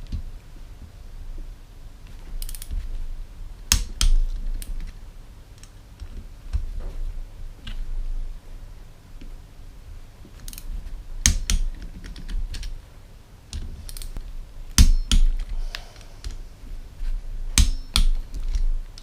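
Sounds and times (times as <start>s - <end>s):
ratchet clicks: 2.4s - 2.7s.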